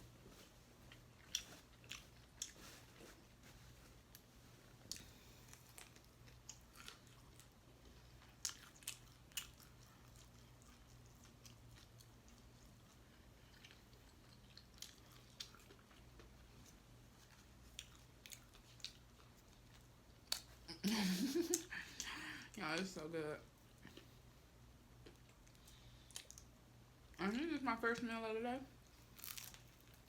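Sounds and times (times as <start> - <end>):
person chewing and crunching food: 0.0 - 22.5, 23.6 - 27.2, 28.8 - 30.0
faint low hum: 0.0 - 30.0.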